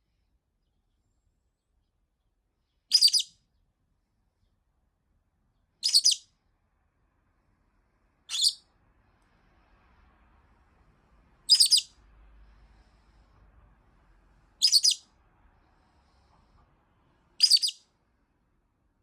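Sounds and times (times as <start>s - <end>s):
lovebird screeching calls: 2.9s - 3.3s, 5.8s - 6.2s, 8.3s - 8.6s, 11.5s - 11.9s, 14.6s - 15.0s, 17.4s - 17.8s.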